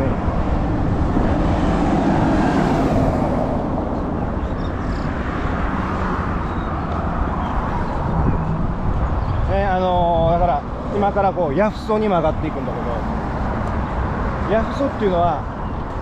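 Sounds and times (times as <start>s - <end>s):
road traffic rumble: 0.0s - 16.0s.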